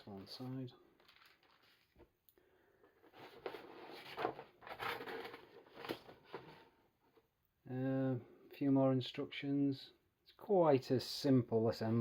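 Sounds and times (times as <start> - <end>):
paper sheets rustling: 0.0 - 2.1.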